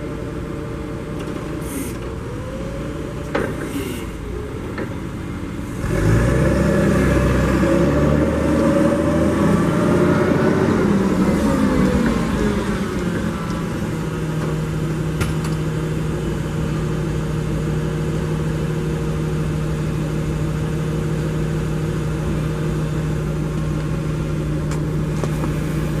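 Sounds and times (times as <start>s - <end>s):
forklift engine idling: 0.0s - 7.6s, 9.3s - 26.0s.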